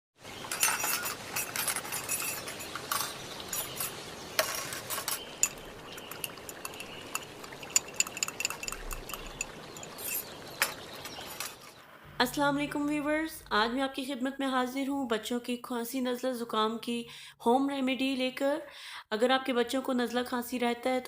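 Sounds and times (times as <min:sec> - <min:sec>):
utensils clinking: 0:00.3 - 0:11.8
utensils scraping: 0:00.4 - 0:11.8.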